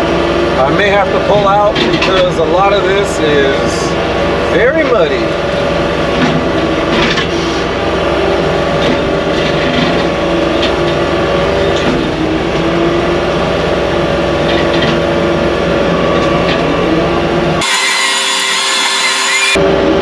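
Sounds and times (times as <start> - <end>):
skid steer engine and cutter drone: 0.0 - 20.0.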